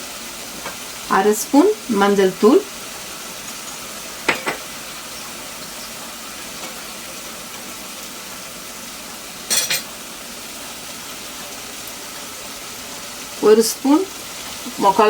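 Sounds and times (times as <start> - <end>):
food frying in oil: 0.0 - 15.0
metal spoon clinking on pan: 9.5 - 9.9.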